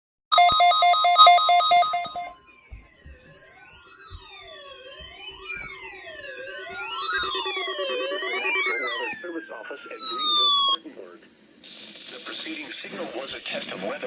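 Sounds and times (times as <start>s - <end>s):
rapidly pulsing alarm beep: 0.3s - 10.8s
siren-like electronic wails: 0.4s - 10.9s.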